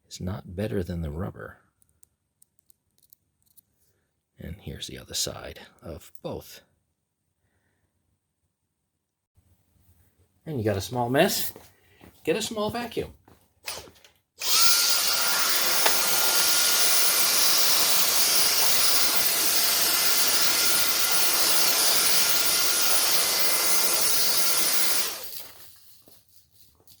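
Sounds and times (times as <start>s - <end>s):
small vacuum cleaner whining: 13.7s - 26.2s.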